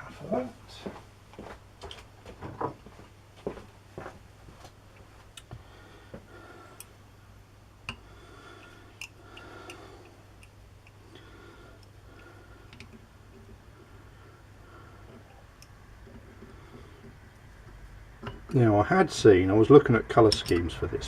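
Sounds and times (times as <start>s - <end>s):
low electrical hum: 0.0s - 21.0s
small metal parts clicking: 20.2s - 20.7s.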